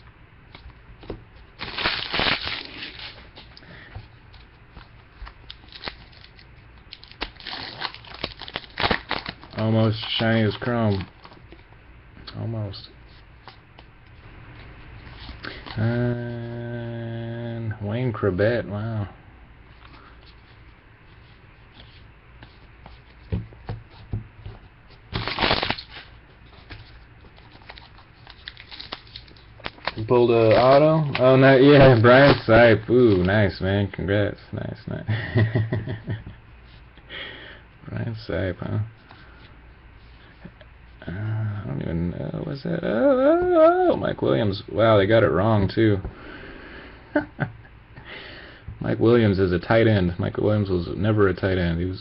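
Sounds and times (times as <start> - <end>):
trading cards rustling: 1.0 - 11.6, 24.9 - 33.5
cards riffling: 25.1 - 33.3.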